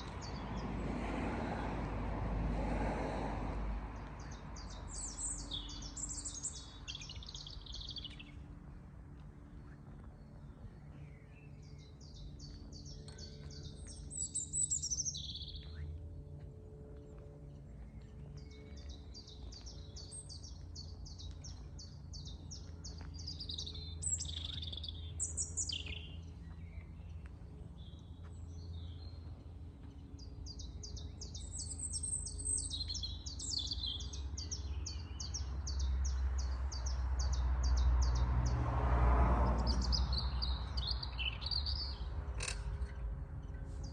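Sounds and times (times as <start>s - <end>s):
birds trilling and chirping: 4.0s - 38.6s, 39.5s - 43.9s
steady low hum: 6.6s - 32.8s.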